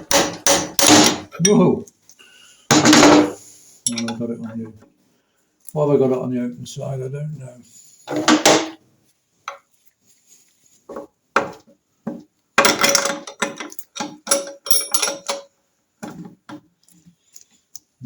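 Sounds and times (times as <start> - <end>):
steel tools clinking on metal: 2.9 - 4.2, 12.7 - 15.5
rattling metal clatter: 12.6 - 15.5.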